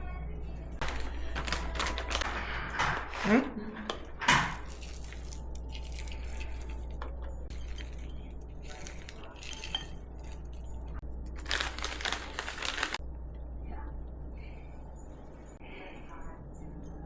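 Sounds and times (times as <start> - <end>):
steady low hum: 0.0 - 17.0
dishes clattering: 0.8 - 4.9
spoons and dishes clinking: 0.8 - 13.0.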